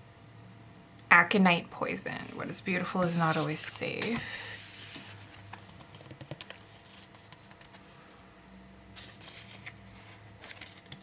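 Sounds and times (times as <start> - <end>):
cards clicking and rustling: 3.4 - 7.9, 9.0 - 11.0.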